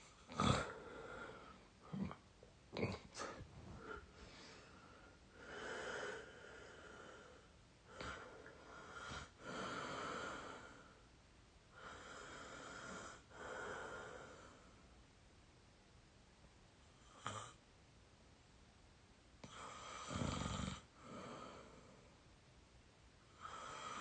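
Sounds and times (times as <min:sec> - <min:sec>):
person snoring: 0:00.2 - 0:02.2, 0:19.5 - 0:21.9
sharp snorts: 0:00.3 - 0:00.8.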